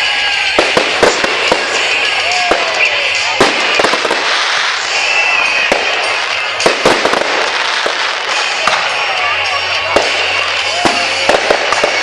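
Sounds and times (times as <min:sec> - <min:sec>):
high firework whistle: 0:00.0 - 0:09.0
firework shells bursting: 0:00.4 - 0:09.0.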